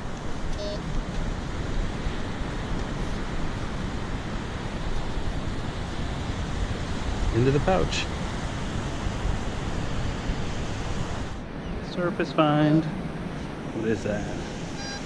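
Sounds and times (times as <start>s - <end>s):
wind buffeting microphone: 0.0s - 14.8s
ocean surf: 0.0s - 15.0s
high beep: 0.6s - 0.8s, 14.4s - 15.0s.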